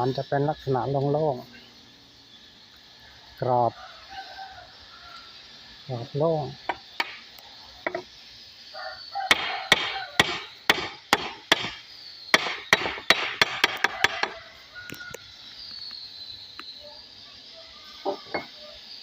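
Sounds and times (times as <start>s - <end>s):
hammer knocking on wood: 9.3s - 11.8s, 12.4s - 14.4s.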